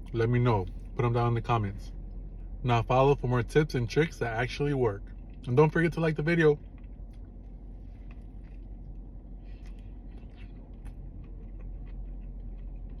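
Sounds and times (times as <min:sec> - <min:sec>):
low steady room hum: 0:00.0 - 0:13.0
faint chewing: 0:06.6 - 0:13.0.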